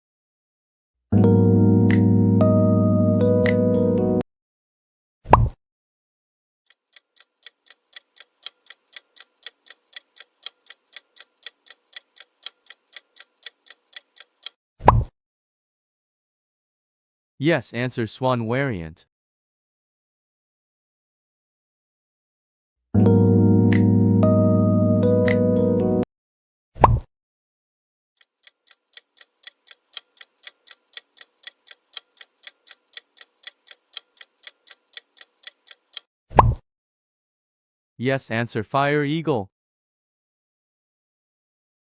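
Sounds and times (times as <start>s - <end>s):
clock ticking: 6.7s - 14.6s, 28.2s - 36.1s.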